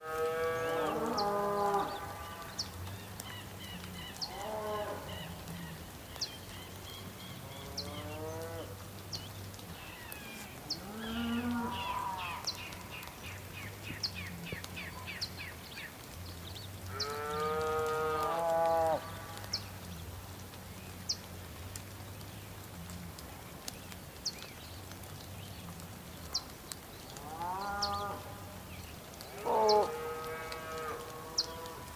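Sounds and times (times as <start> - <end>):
birds chirping: 0.3 - 31.9.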